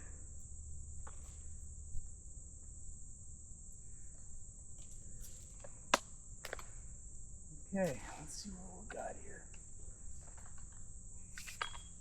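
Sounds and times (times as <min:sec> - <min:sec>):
high-pitched insect chorus trilling: 0:00.0 - 0:12.0.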